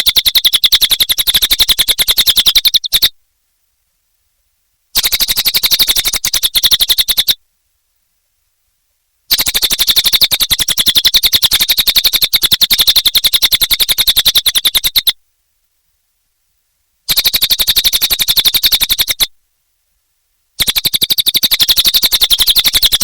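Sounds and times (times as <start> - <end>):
songbird chattering trill: 0.0 - 3.2, 5.0 - 7.4, 9.3 - 15.2, 17.1 - 19.3, 20.6 - 23.0.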